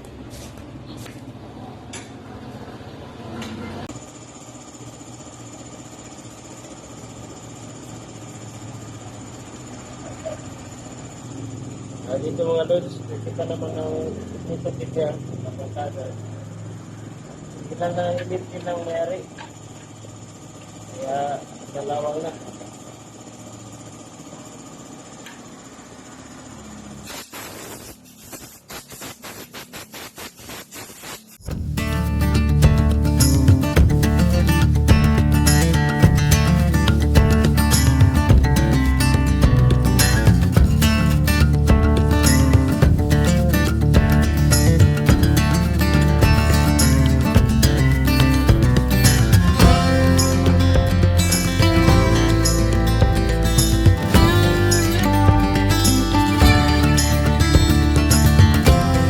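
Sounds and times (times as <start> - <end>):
motor running with whine: 3.9 - 59.0
acoustic guitar music: 31.5 - 59.0.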